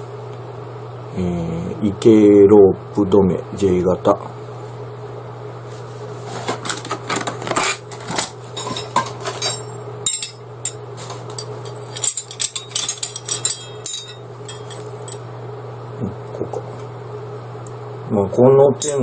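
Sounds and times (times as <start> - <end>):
metal tent pegs clinking: 8.1 - 15.2.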